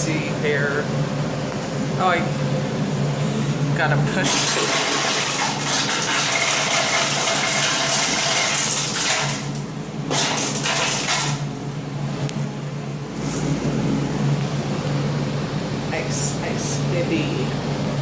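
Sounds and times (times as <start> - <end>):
machine humming: 0.0 - 18.0
ice dispenser pouring ice: 4.1 - 11.6.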